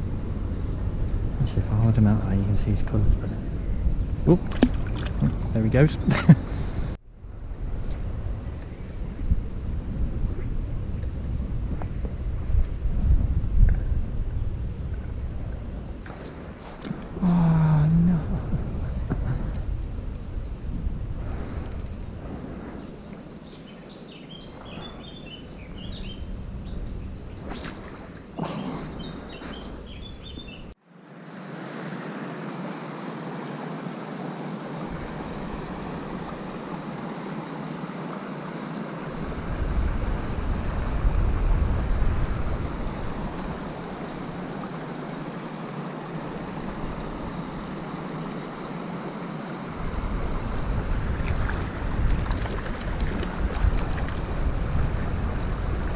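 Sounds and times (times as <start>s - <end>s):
wind rumbling on microphone: 0.0s - 30.8s, 34.7s - 37.2s, 38.9s - 55.9s
small birds chirping: 3.4s - 7.0s, 13.2s - 30.8s
flowing stream water: 4.2s - 6.8s, 22.8s - 55.9s.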